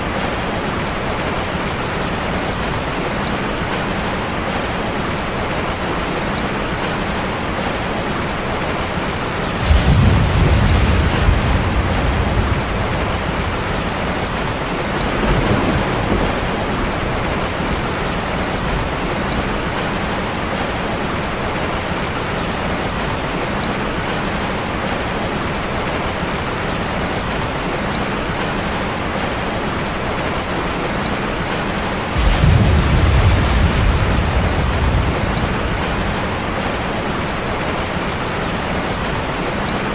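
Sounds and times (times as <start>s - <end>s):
heavy rain: 0.0s - 39.9s
low rumble of thunder: 9.3s - 22.3s, 32.0s - 39.5s.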